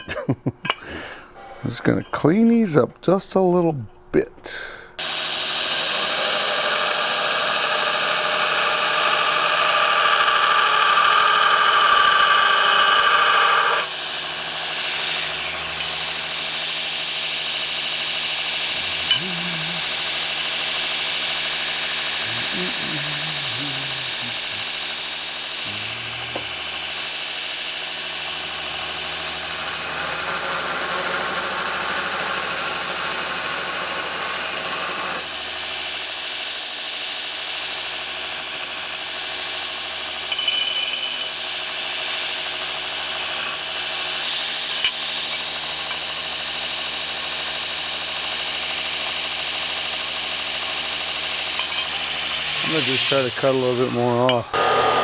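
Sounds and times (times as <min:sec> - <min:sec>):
grinder grinding steel: 0:05.0 - 0:55.0.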